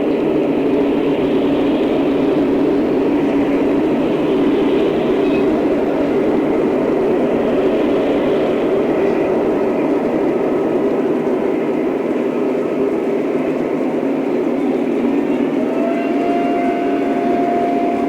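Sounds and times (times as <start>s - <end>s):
model train rumbling on track: 0.0s - 18.0s.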